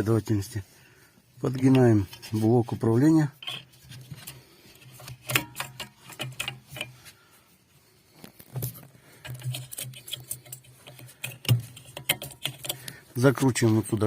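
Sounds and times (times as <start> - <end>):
plastic parts clicking and knocking: 3.4 - 7.0, 8.4 - 13.1.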